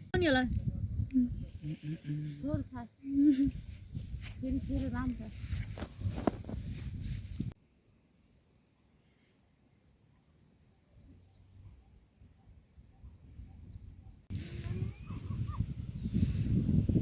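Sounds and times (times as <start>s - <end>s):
crickets chirping: 5.6s - 16.9s.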